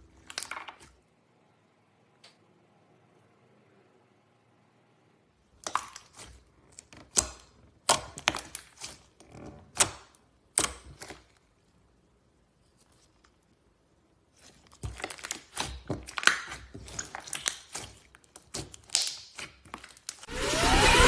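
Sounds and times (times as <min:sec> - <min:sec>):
slime clicking pops: 0:18.5 - 0:19.6.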